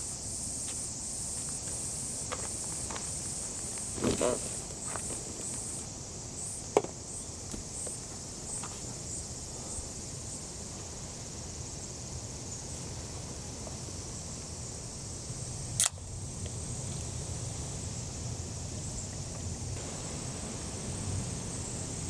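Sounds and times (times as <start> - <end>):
insects chirping: 0.0 - 22.0
low outdoor hiss: 0.0 - 22.0
sharp click: 15.8 - 16.0.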